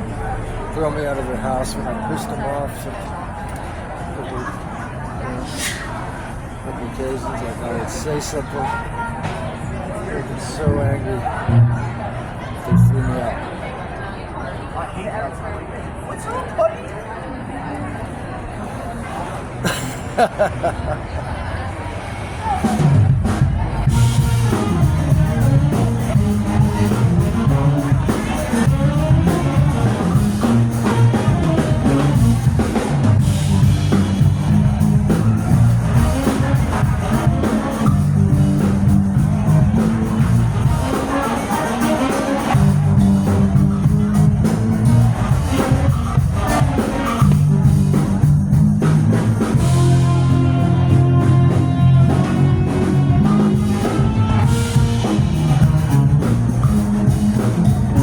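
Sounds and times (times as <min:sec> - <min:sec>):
bass line: 0:10.7 - 0:13.4, 0:22.6 - 0:58.0
live band playing: 0:22.5 - 0:58.0.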